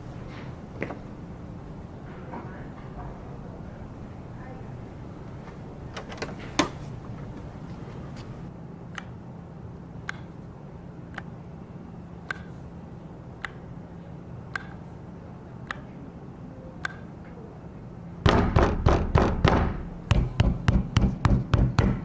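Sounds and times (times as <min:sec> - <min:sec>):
low steady hum: 0:00.0 - 0:22.0
slow sharp ticks: 0:10.0 - 0:10.3, 0:13.4 - 0:13.6, 0:14.5 - 0:14.8.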